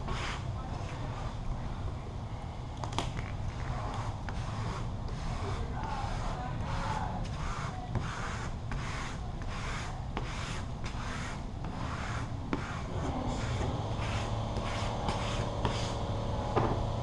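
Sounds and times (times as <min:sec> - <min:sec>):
steady low hum: 0:00.0 - 0:17.0
squeegee rubbing over vinyl film: 0:03.0 - 0:16.0.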